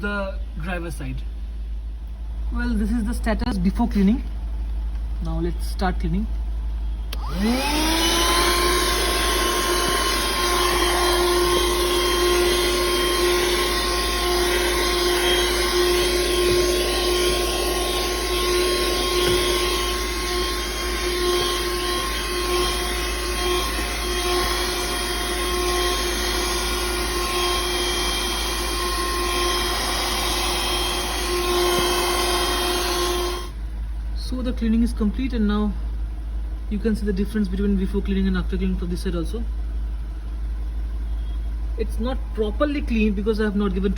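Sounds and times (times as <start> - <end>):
handheld vacuum cleaner whine: 7.1 - 33.6.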